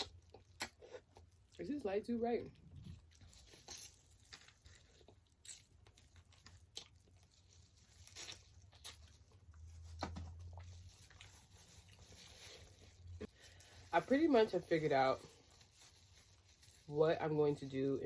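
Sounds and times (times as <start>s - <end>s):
chewing with mouth clicks: 0.0s - 1.6s, 2.5s - 13.0s
food rustling: 2.5s - 18.0s.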